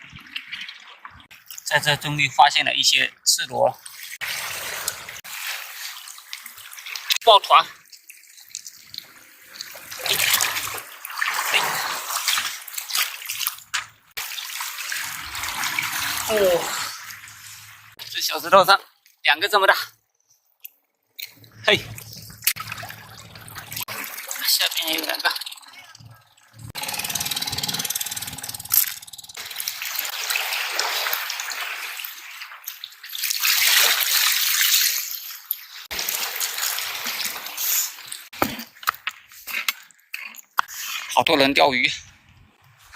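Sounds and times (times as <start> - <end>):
seawater splashing and trickling: 0.0 - 2.1, 3.6 - 19.2, 21.2 - 41.2
low rapid buzzing: 25.5 - 29.4.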